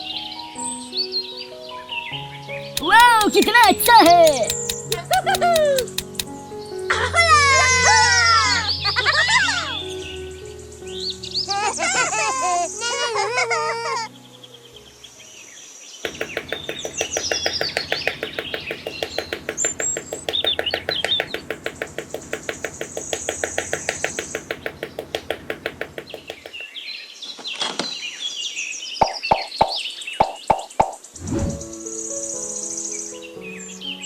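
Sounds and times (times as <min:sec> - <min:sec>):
sharp clicks: 0:02.7 - 0:06.3, 0:16.1 - 0:26.7
fast rattling pulse: 0:16.1 - 0:26.6.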